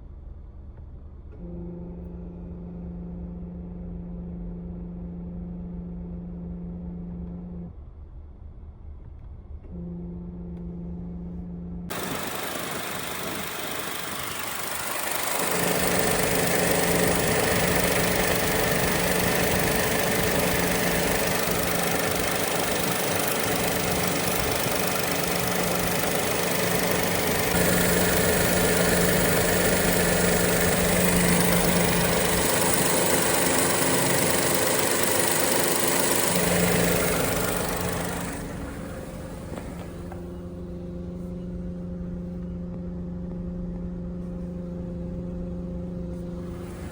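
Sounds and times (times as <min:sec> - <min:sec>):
hissing rattle of compressor: 0:11.9 - 0:42.4, 0:45.6 - 0:46.9
car engine idling: 0:11.9 - 0:46.9.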